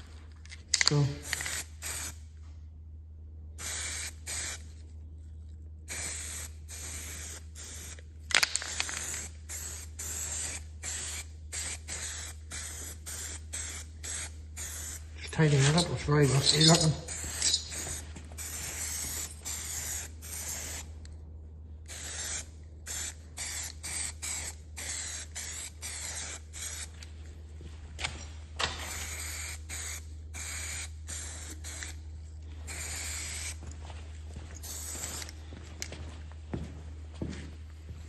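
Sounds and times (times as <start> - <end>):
aerosol spray can hissing: 3.6 - 4.6, 5.9 - 15.8, 16.5 - 20.9, 21.9 - 26.9, 28.8 - 32.0, 32.7 - 33.6, 34.6 - 35.3.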